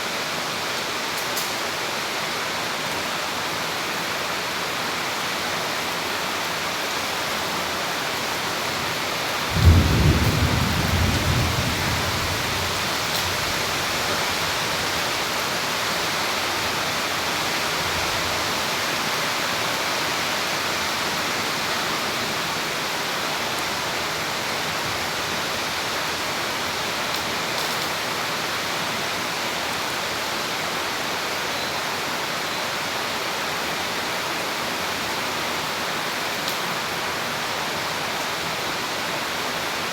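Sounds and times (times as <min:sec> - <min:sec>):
heavy rain pouring: 0:00.0 - 0:39.9
thunder clap rumbling: 0:09.5 - 0:13.1.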